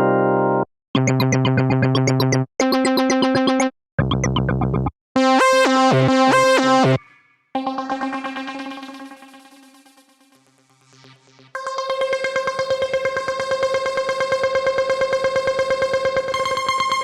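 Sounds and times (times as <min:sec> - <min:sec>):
synthesizer phrases: 0:01.0 - 0:04.6, 0:05.2 - 0:11.4.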